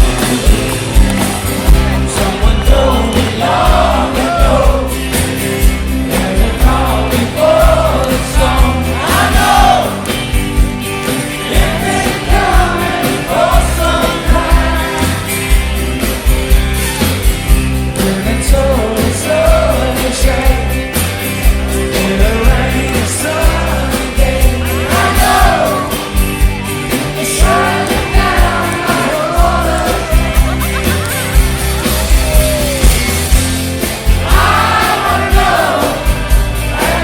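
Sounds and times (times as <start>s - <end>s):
live rock band playing: 0.0s - 37.0s
man singing: 1.8s - 5.2s, 5.9s - 10.0s, 11.4s - 15.2s, 17.8s - 20.9s, 21.7s - 26.0s, 27.2s - 30.2s.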